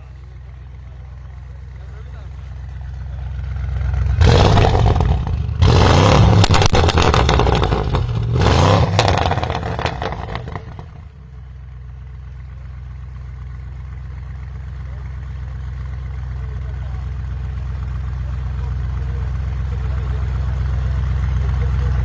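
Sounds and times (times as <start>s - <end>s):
car engine idling: 0.0s - 22.0s
car engine revving: 2.0s - 11.2s
exhaust crackles and pops: 4.0s - 11.1s.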